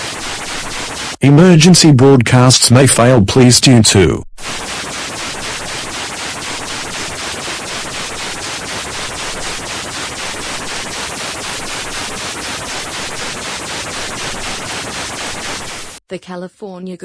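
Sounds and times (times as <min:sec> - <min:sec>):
broadcast static hiss: 0:00.0 - 0:16.0
faint regular pulsing: 0:00.0 - 0:16.0.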